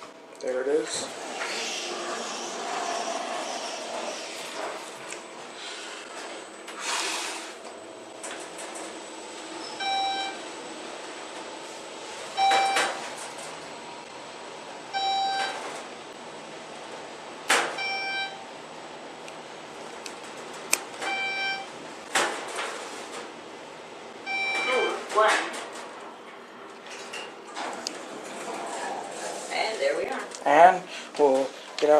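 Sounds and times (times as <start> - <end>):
elevator electronic beep: 9.6 - 10.4, 12.3 - 13.0, 14.9 - 15.6, 17.8 - 18.4, 21.0 - 21.7, 24.2 - 25.0.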